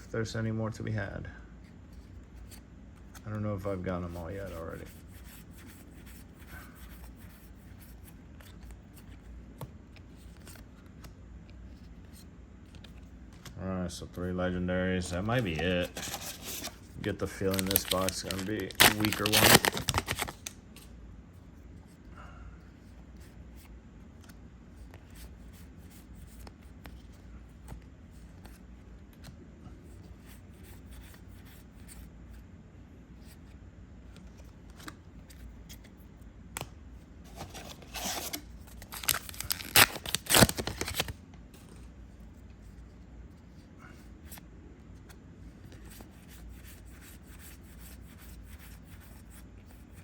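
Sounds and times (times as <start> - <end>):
foil wrapper crinkling and tearing: 15.6 - 20.6, 37.9 - 41.2.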